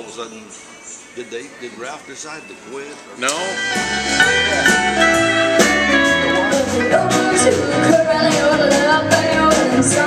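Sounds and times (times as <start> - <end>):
country band music: 3.3 - 10.0
drums on a steady beat: 3.3 - 10.0
person singing: 4.2 - 10.0.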